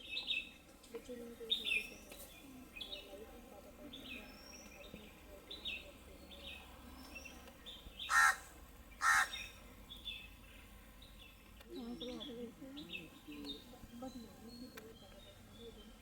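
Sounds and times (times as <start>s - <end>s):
birds chirping: 1.4s - 16.0s
loud harsh bird calls: 8.0s - 9.6s.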